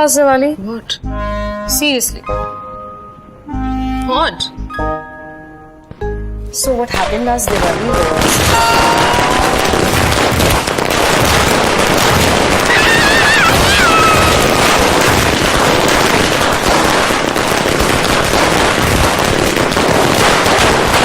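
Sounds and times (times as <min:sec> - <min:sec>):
firecrackers crackling rapidly: 0:07.0 - 0:21.0.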